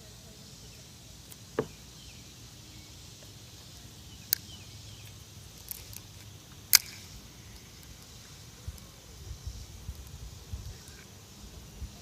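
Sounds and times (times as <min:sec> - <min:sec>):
faint outdoor background: 0:00.0 - 0:12.0.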